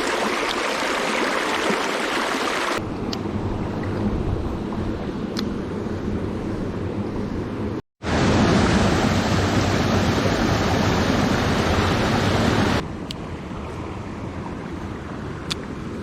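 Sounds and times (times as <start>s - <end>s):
running river water: 0.0s - 2.9s, 8.1s - 12.8s.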